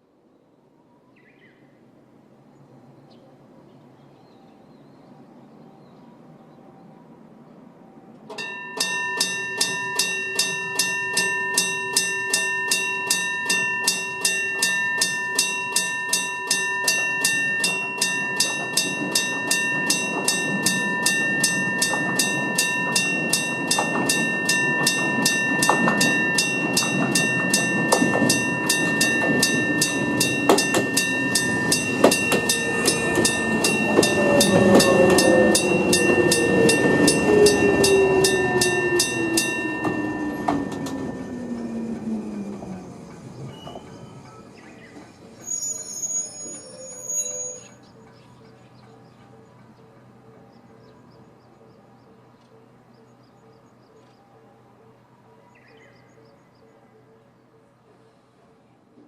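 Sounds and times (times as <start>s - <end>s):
train rumbling: 5.1s - 55.3s
wheels clicking over rail joints: 8.2s - 51.0s
level crossing bells ringing: 8.3s - 44.6s
falling whine: 17.8s - 44.5s.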